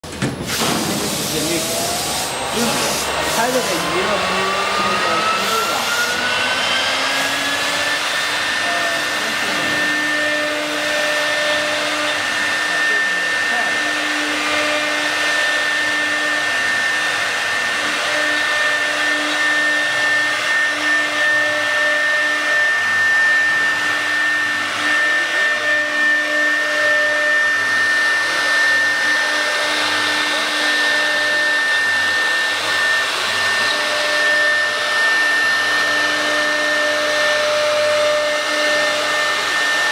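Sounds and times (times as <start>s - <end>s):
cnc router spindle whine: 0.1s - 39.9s
rushing air-like noise: 0.4s - 8.6s.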